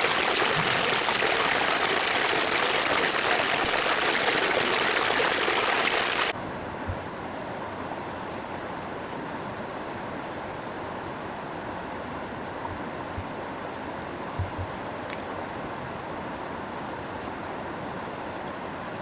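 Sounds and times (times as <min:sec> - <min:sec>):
rushing river water: 0:00.0 - 0:06.3.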